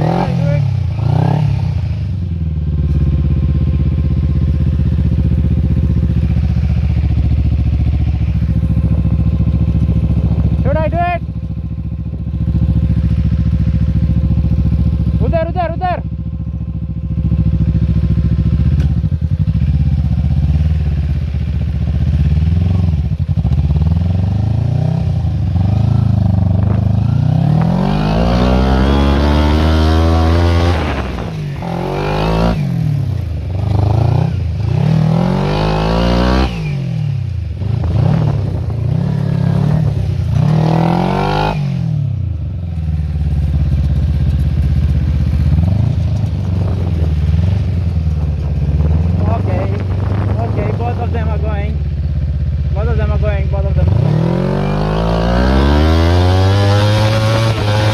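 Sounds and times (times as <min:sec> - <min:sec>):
go-kart engine revving: 0:00.0 - 0:02.2, 0:21.8 - 0:42.2, 0:52.7 - 0:57.9.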